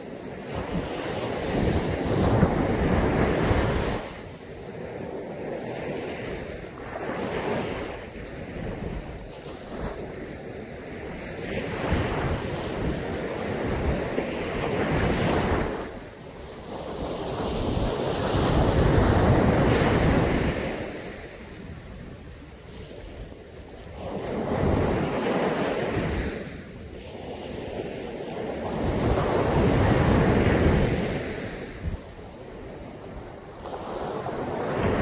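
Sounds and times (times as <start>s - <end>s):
waves breaking on a beach: 0.0s - 35.0s
wind buffeting microphone: 0.1s - 35.0s.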